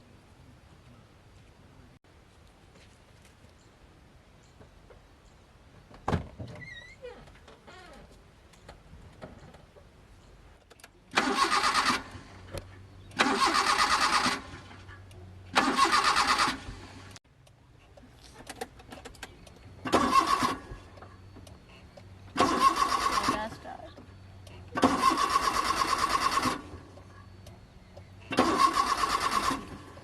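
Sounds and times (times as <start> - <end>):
starter motor cranking: 11.1 - 12.5, 13.1 - 14.9, 15.5 - 17.2, 19.5 - 21.1, 22.2 - 23.8, 24.4 - 30.0.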